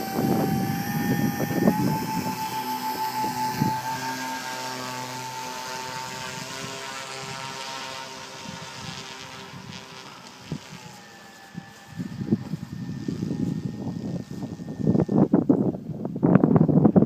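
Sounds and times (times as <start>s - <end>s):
model airplane engines droning: 0.0s - 17.0s.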